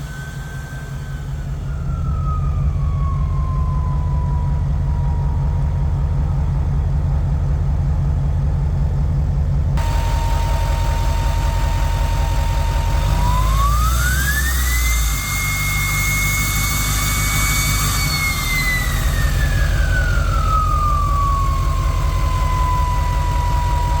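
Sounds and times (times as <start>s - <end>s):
diesel engine rumble: 0.0s - 24.0s
turbo whistling: 9.8s - 24.0s.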